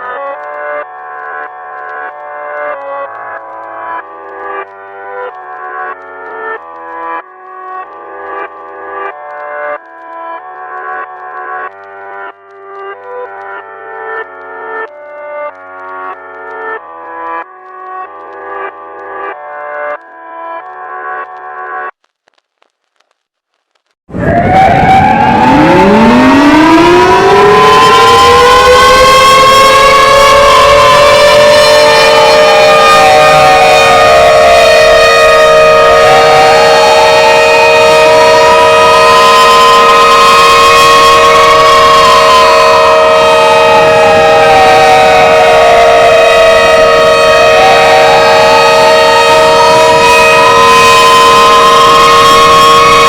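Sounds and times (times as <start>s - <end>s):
siren winding up: 24.1s - 53.0s
steady alarm tones: 24.1s - 53.0s.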